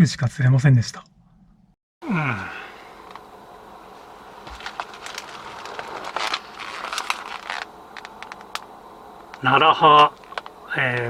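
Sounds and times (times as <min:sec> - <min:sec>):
steady low hiss: 0:02.8 - 0:11.0
handling clicks and rustles: 0:04.0 - 0:11.0.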